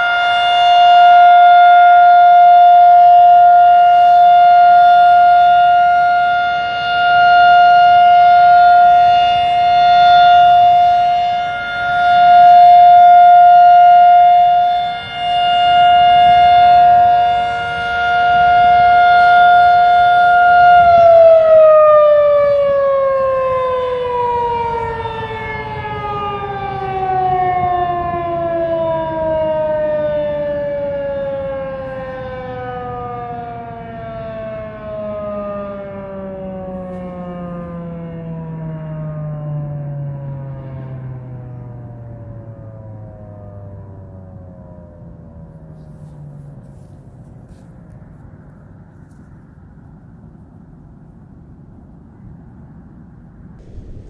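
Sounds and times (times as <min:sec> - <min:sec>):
tornado warning siren wailing: 0:00.0 - 0:47.6, 0:53.6 - 0:54.0.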